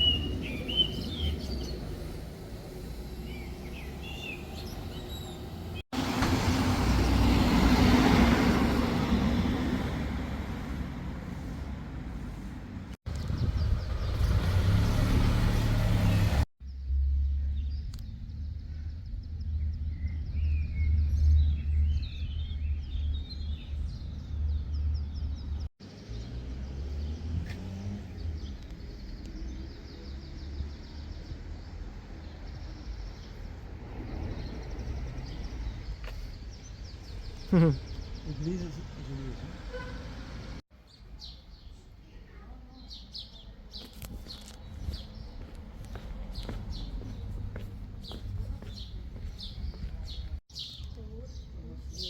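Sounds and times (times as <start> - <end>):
bird chirps: 0.0 - 1.9.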